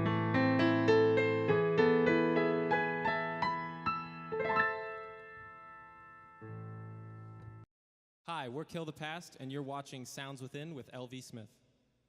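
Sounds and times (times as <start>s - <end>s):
piano notes and chord: 0.0s - 7.6s.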